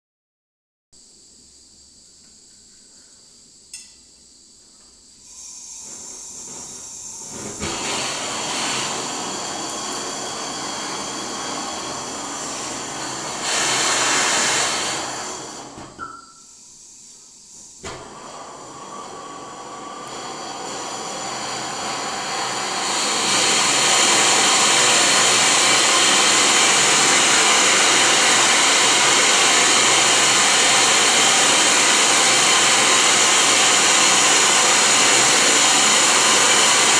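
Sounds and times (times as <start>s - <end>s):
gas torch hissing: 1.2s - 36.9s
rushing torch flame: 5.8s - 15.8s, 18.0s - 36.9s.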